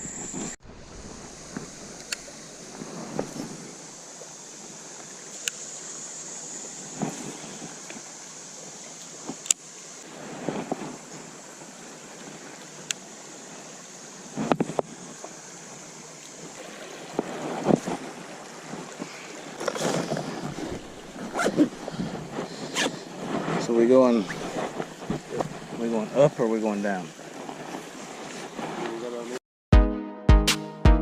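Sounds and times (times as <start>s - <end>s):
creek water flowing: 0.6s - 29.4s.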